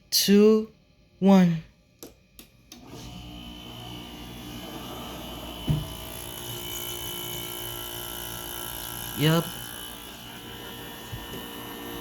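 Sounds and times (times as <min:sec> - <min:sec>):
air conditioner fan humming: 0:00.0 - 0:12.0
low thump: 0:05.6 - 0:06.0.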